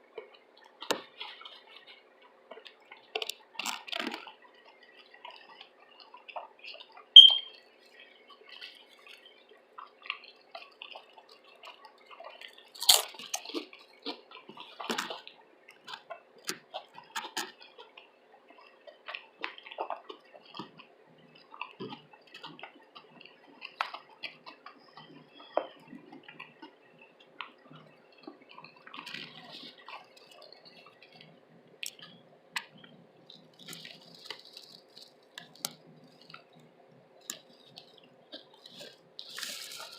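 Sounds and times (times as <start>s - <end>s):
wet chewing smacks and clicks: 0.0s - 39.9s
high squeak: 7.2s - 7.5s
sharp crackle: 37.2s - 39.9s.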